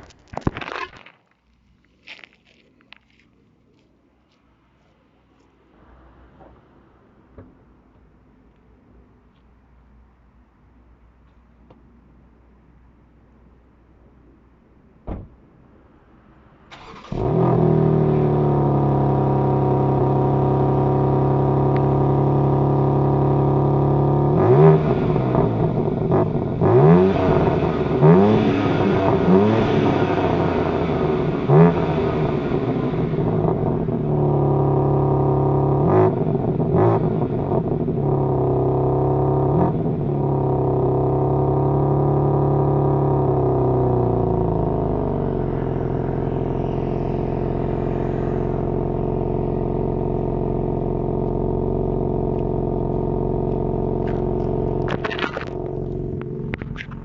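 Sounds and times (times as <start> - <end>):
car engine starting and idling: 13.4 - 57.0
engine revving: 16.7 - 57.0.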